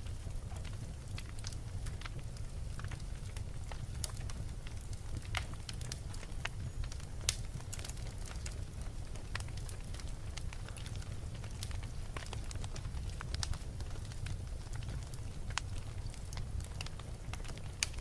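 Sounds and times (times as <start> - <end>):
fire crackling and popping: 0.0 - 18.0
low rumble of flames: 0.0 - 18.0.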